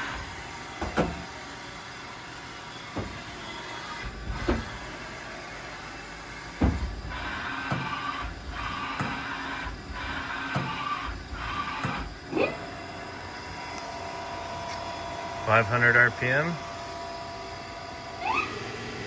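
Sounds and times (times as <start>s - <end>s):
lathe mechanical hum: 0.0s - 19.0s
sharp metallic clunks: 0.8s - 1.4s, 2.9s - 3.4s, 6.5s - 12.2s.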